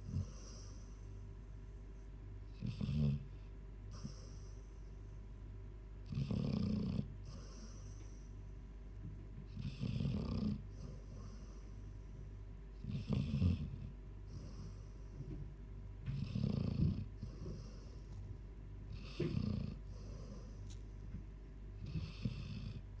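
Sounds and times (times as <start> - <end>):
dog snoring: 0.0 - 1.0, 2.5 - 5.4, 6.0 - 11.8, 12.8 - 15.3, 16.1 - 18.2, 18.9 - 20.8, 21.8 - 23.0
dog breathing quietly: 0.0 - 5.5, 7.2 - 18.2, 18.9 - 21.1.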